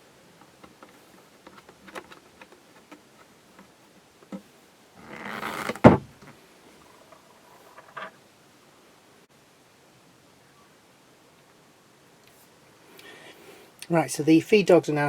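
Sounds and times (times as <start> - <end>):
scraping rustle: 0.0 - 8.2.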